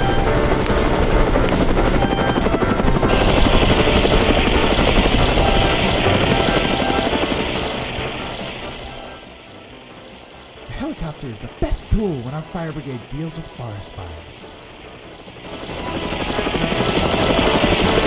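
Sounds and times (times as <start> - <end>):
cartoon helicopter rotor chop: 0.0 - 9.7, 15.4 - 18.0
faint background music: 0.0 - 18.0.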